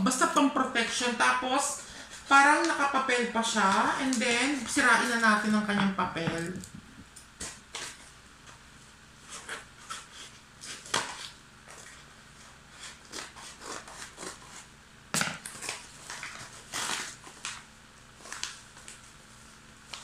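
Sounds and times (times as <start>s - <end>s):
paper wrapping torn and crinkled: 15.4s - 19.1s.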